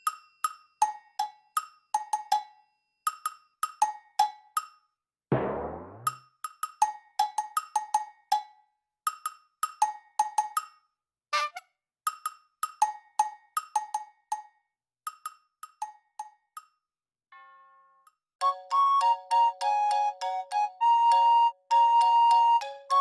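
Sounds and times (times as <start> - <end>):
dry percussion knocks: 5.3 - 6.2.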